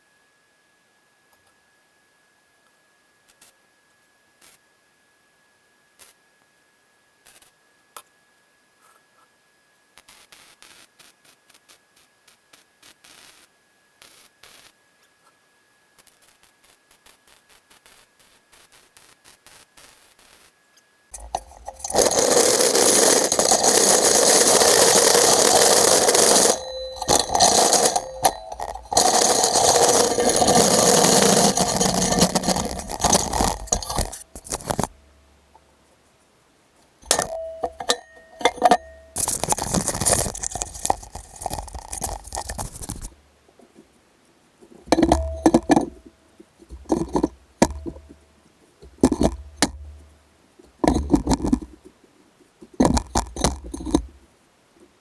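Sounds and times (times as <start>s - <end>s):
metal clinks and knocks: 21.2s - 35.3s, 37.0s - 43.1s, 44.9s - 46.1s, 46.7s - 48.2s, 48.8s - 51.9s, 52.8s - 54.2s.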